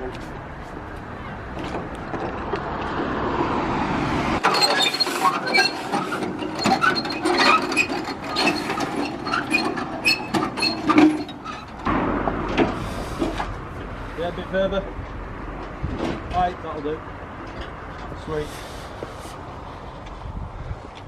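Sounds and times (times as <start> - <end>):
metallic clinks and squeaks: 4.4 - 11.9
rising rumble: 11.7 - 16.3.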